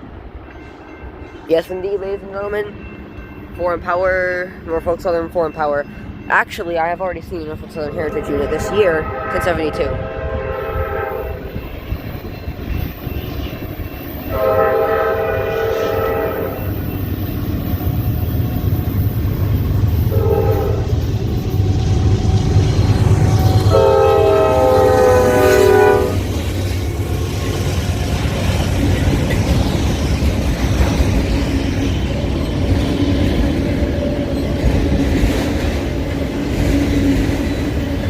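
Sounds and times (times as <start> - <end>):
diesel locomotives rumbling past: 0.0 - 38.0
locomotive air horn blasts: 8.2 - 11.5, 14.3 - 16.7, 20.1 - 20.9, 23.7 - 26.2.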